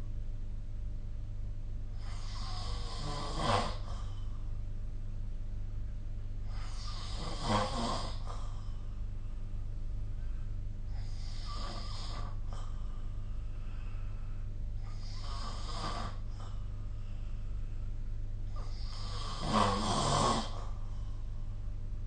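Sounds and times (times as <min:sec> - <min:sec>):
steady low hum: 0:00.0 - 0:22.0
person snoring: 0:02.0 - 0:04.2, 0:06.4 - 0:08.8, 0:10.9 - 0:12.8, 0:13.6 - 0:16.7, 0:18.5 - 0:20.8.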